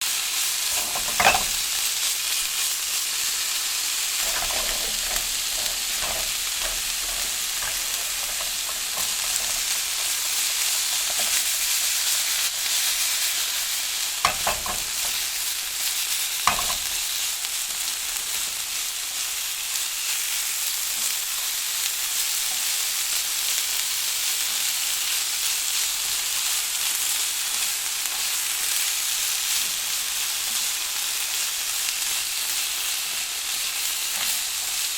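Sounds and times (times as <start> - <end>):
vegetables sizzling in hot oil: 0.0 - 34.9
utensil scraping and knocking pan: 0.7 - 1.8, 4.2 - 11.6, 14.2 - 15.3, 16.5 - 17.0.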